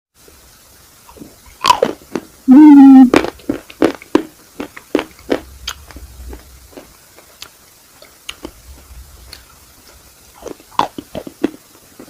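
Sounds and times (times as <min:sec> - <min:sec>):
person humming mmm: 0:02.5 - 0:03.3
crunching and chewing ice cream cone: 0:03.1 - 0:07.5, 0:10.4 - 0:12.0.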